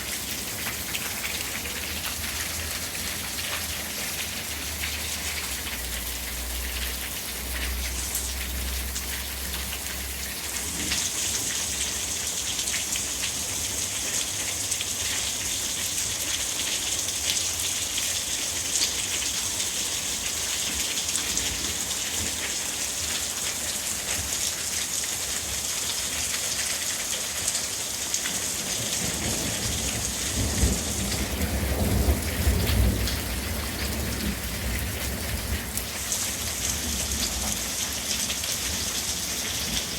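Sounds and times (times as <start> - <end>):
hail and rain pelting down: 0.0 - 39.9.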